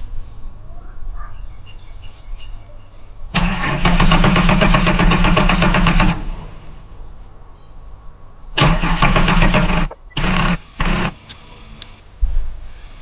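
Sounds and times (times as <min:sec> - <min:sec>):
car starter motor cranking: 0:03.4 - 0:06.8, 0:08.6 - 0:11.3.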